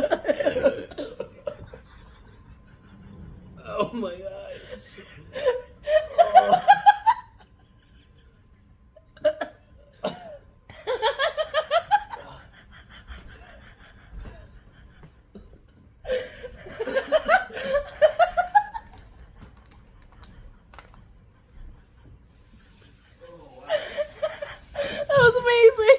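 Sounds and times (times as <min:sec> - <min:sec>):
person laughing: 0:00.0 - 0:02.4, 0:05.3 - 0:07.4, 0:10.1 - 0:19.8, 0:22.9 - 0:25.9.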